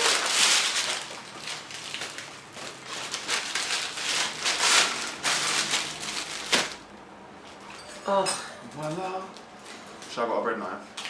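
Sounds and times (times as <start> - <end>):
bread crust crackling: 0.0 - 6.9.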